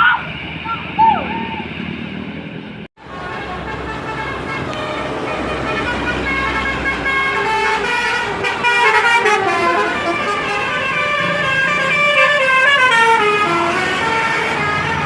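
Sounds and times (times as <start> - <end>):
bus horn playing a tune: 3.0 - 15.0.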